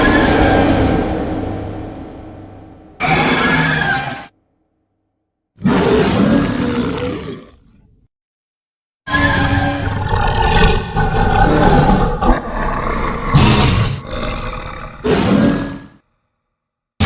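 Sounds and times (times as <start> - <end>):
monster roar: 9.1 - 16.0.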